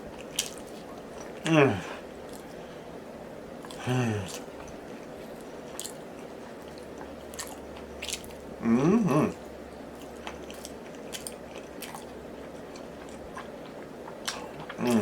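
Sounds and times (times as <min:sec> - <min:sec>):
wet chewing and lip smacks: 0:03.6 - 0:08.4, 0:10.0 - 0:15.0.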